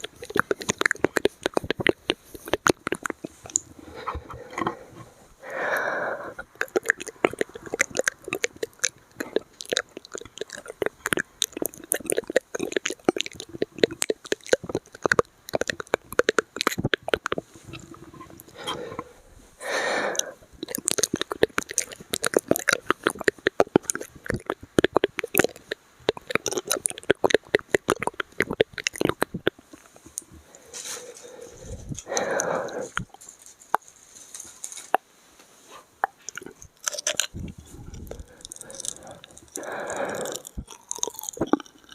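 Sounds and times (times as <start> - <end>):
wet mouth clicks and smacks: 0.0 - 4.8, 5.4 - 19.1, 20.1 - 35.1, 36.0 - 41.9
breathy burst: 3.7 - 6.5, 18.5 - 20.5, 30.4 - 33.0, 37.6 - 40.6.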